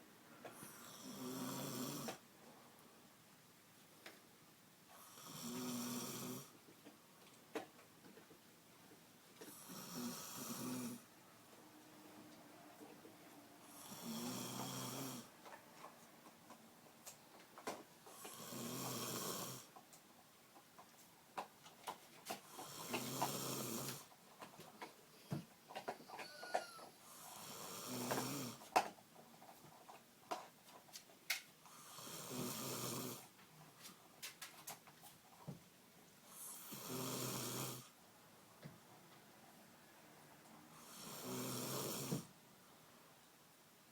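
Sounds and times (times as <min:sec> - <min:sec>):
woman snoring loudly: 0:00.7 - 0:02.2, 0:05.0 - 0:06.5, 0:09.5 - 0:11.0, 0:13.6 - 0:15.3, 0:18.2 - 0:19.7, 0:22.6 - 0:24.1, 0:27.1 - 0:28.6, 0:31.8 - 0:33.2, 0:36.5 - 0:37.9, 0:40.8 - 0:42.3.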